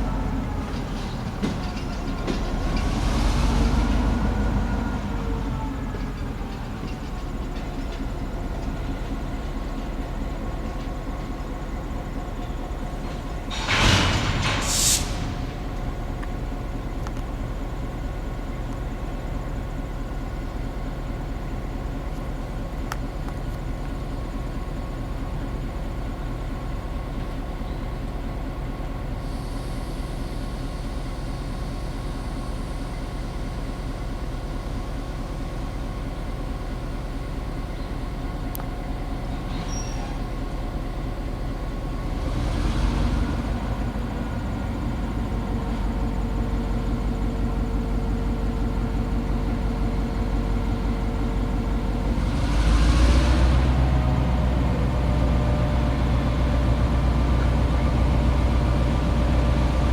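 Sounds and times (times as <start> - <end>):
diesel locomotive engine rumbling: 0.0 - 59.9
short hissing bursts: 14.4 - 15.5.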